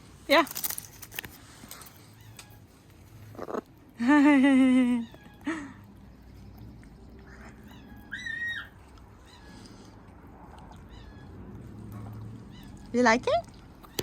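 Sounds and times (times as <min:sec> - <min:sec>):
parrot call: 0:07.7 - 0:08.8.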